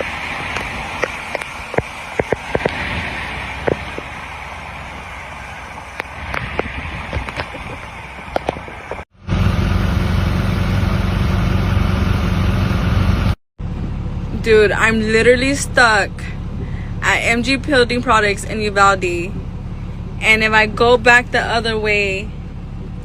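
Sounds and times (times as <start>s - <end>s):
vehicle engine drone: 0.0s - 23.0s.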